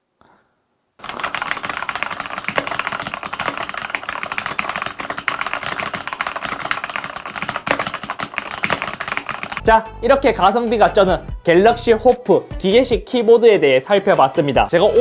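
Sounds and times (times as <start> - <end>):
mechanical keyboard typing: 1.0 - 9.7.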